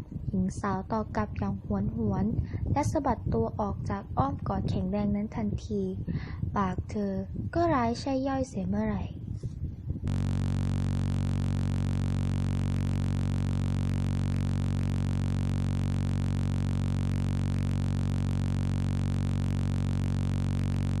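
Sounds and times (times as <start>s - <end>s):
low buzzing drone: 10.0s - 21.0s.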